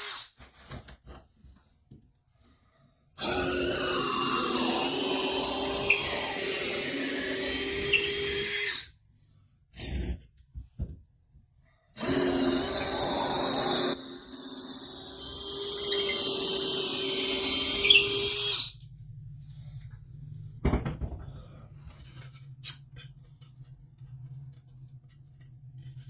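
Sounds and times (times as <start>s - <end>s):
power drill boring into wood: 3.2s - 8.9s, 12.0s - 18.7s.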